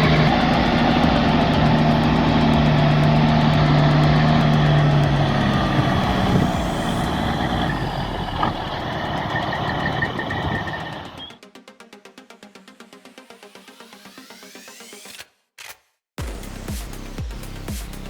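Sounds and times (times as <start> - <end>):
heavy truck engine: 0.0 - 11.4
high beeping: 0.0 - 11.4.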